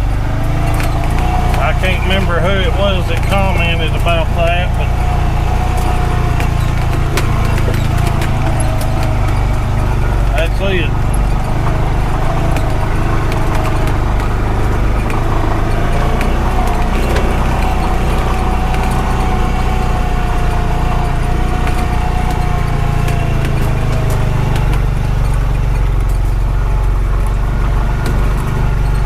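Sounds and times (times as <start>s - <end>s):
low engine drone: 0.0s - 29.0s
faint whine: 1.6s - 22.0s.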